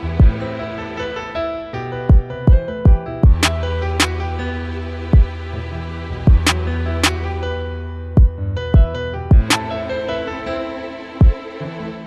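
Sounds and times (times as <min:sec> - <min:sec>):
trap beat melodic loop: 0:00.1 - 0:00.4, 0:02.1 - 0:04.4, 0:05.2 - 0:05.5, 0:06.3 - 0:07.4, 0:08.2 - 0:09.9, 0:11.2 - 0:11.6.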